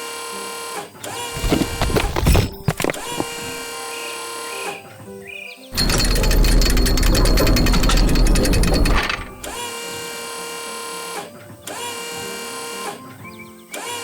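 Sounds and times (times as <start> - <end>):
rapid mechanical rattle: 1.4 - 3.7, 5.7 - 9.7
held machine whines: 5.8 - 9.7.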